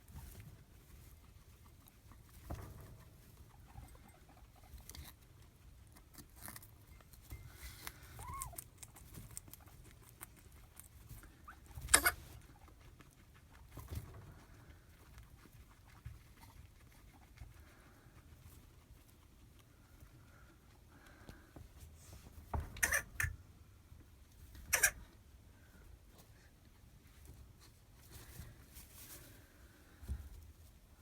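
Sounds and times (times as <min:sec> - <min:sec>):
guinea pig rustling in bedding: 0:00.0 - 0:23.2, 0:23.8 - 0:31.0
guinea pig coughing: 0:11.5 - 0:12.6, 0:22.8 - 0:23.4, 0:24.6 - 0:25.0.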